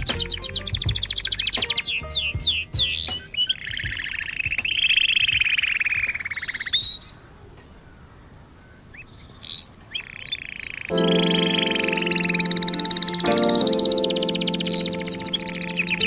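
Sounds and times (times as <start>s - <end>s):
high bird chirps: 0.0s - 7.2s.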